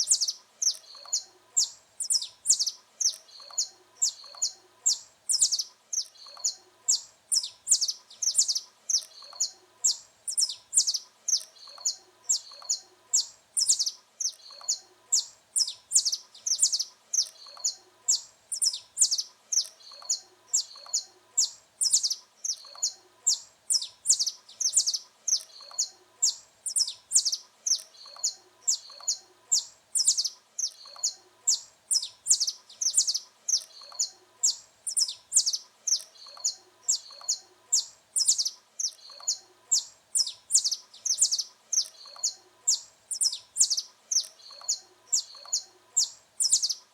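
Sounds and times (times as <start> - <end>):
finch chirping: 0.0 - 46.9.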